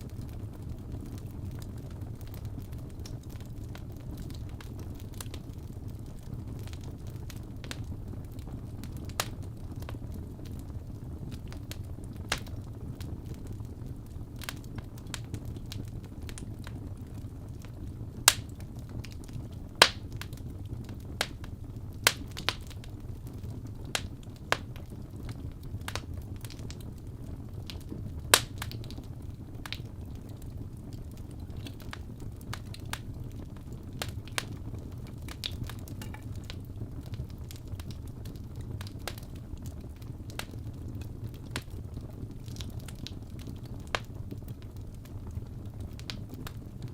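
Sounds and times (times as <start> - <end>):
wood fire crackling: 0.0 - 46.9
sharp fire pops: 11.3 - 46.9.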